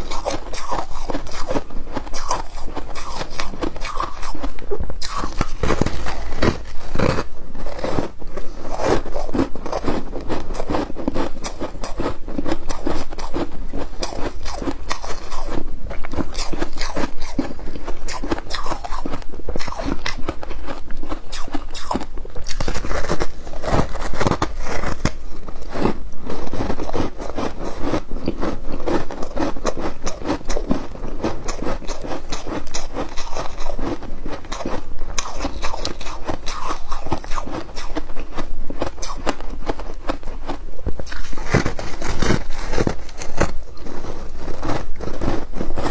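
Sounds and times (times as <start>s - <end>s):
chewing crunchy ice: 0.0s - 45.9s.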